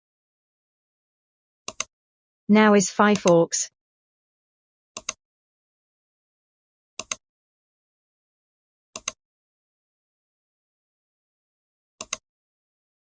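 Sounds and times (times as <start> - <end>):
computer mouse double-clicks: 7.0 - 7.2, 9.0 - 9.2, 12.0 - 12.2.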